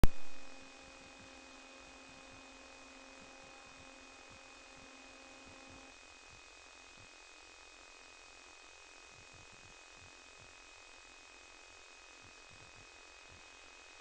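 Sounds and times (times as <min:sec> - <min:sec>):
electrical hiss: 0:00.0 - 0:05.9
thin high whine: 0:00.0 - 0:06.3
faint hum: 0:00.0 - 0:14.0.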